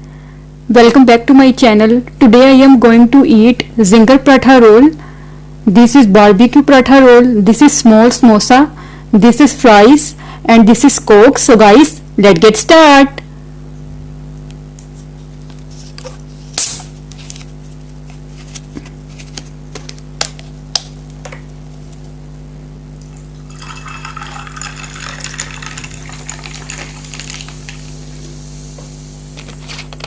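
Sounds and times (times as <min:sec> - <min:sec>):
steady low hum: 0:00.0 - 0:30.0
soda fizzing in a glass: 0:23.3 - 0:28.0.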